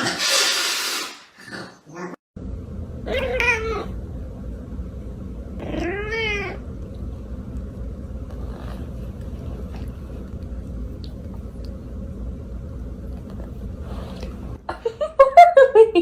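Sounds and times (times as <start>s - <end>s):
steady low rumble: 2.4s - 15.2s
cat meowing: 3.1s - 4.0s, 5.6s - 6.6s.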